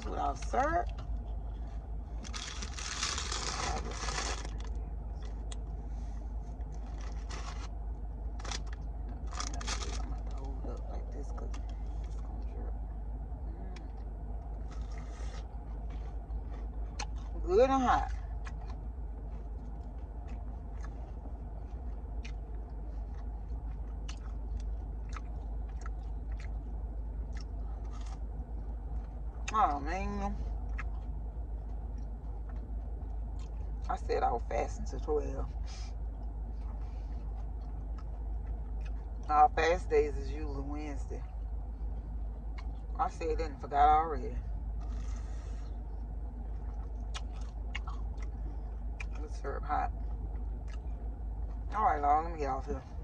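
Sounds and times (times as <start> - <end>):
low steady hum: 0.0 - 53.0
person chewing food: 0.9 - 10.4, 13.7 - 17.4, 18.1 - 29.5, 30.5 - 33.9, 35.6 - 39.3, 41.3 - 43.0, 44.6 - 49.2, 49.9 - 51.7
food packaging rustling: 2.2 - 4.8.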